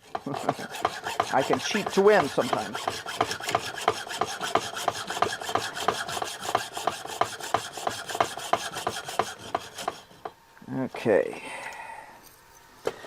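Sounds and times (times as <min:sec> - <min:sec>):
hand saw rasping through metal: 0:00.0 - 0:10.4.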